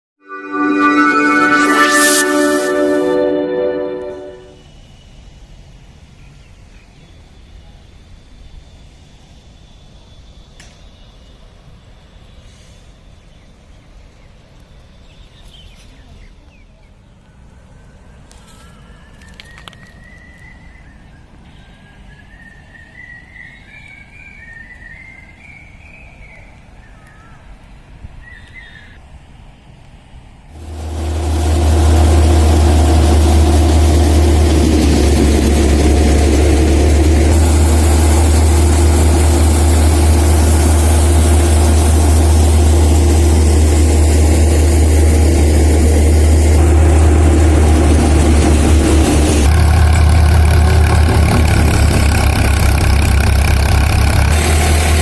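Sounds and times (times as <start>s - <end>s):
diesel engine running steadily: 30.6s - 55.0s.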